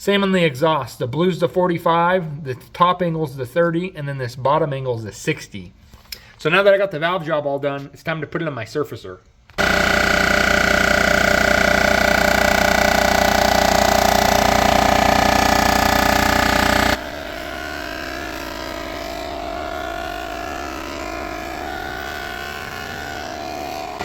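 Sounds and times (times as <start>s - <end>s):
machine humming: 9.6s - 24.0s.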